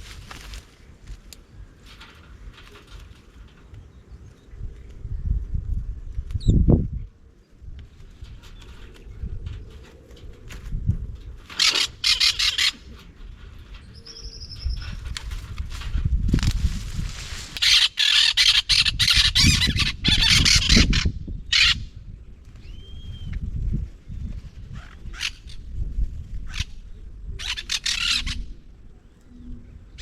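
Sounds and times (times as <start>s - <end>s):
parrots squawking: 11.6s - 12.8s.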